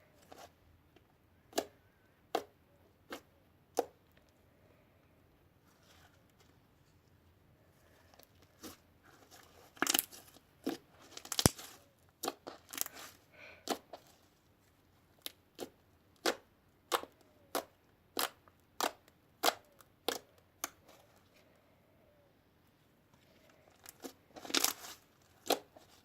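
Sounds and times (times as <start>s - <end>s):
slime squeezed crackling pops: 11.2s - 12.9s.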